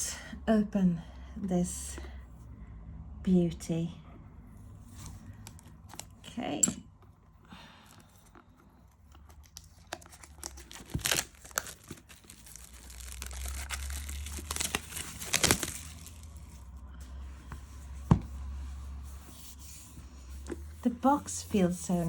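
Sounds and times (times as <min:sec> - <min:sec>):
plastic wrapping tearing and crumpling: 0:09.3 - 0:16.8.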